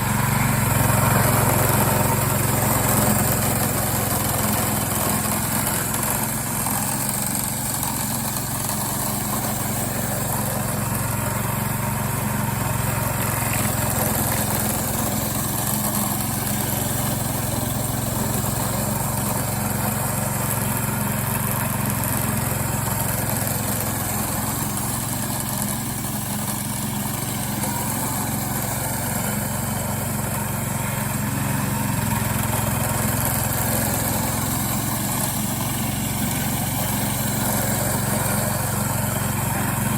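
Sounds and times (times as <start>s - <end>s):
small engine running: 0.0s - 39.9s.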